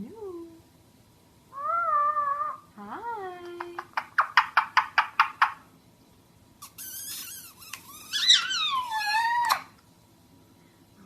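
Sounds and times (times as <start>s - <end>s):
parrot chattering: 1.5s - 2.7s, 3.6s - 5.7s, 6.6s - 9.8s
parrot calling: 1.5s - 2.8s, 3.8s - 5.7s, 6.6s - 9.8s.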